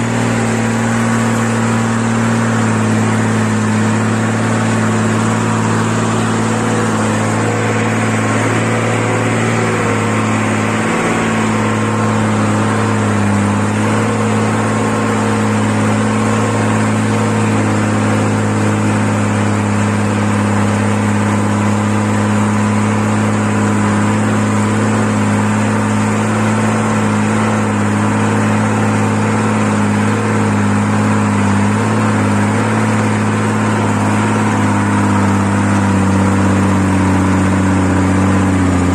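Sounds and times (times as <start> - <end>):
truck diesel engine pulling uphill: 0.0 - 38.9.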